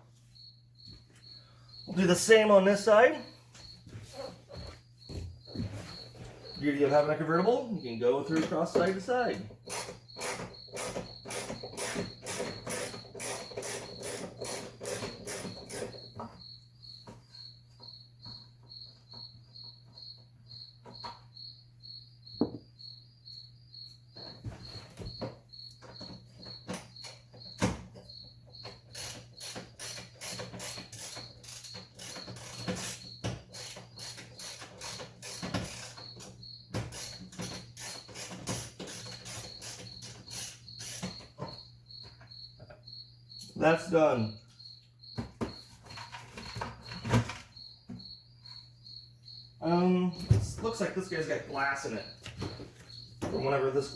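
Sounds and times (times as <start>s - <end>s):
cricket chirping: 0.0s - 53.9s
hand ratchet clicking: 9.6s - 16.0s, 28.9s - 36.3s, 36.9s - 41.1s.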